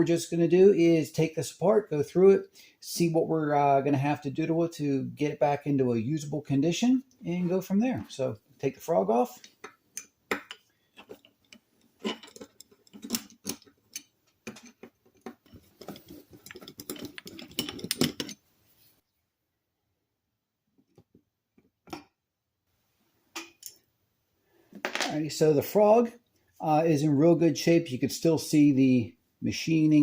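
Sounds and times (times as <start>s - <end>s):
small metal clicks and scrapes: 9.4s - 18.4s.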